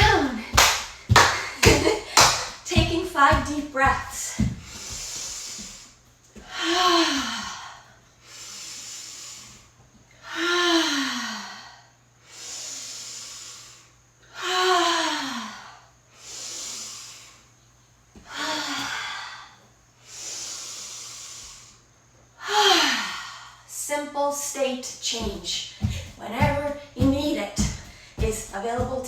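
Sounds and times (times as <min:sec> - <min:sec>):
woman breathing deeply: 0:04.2 - 0:23.8, 0:27.8 - 0:28.2.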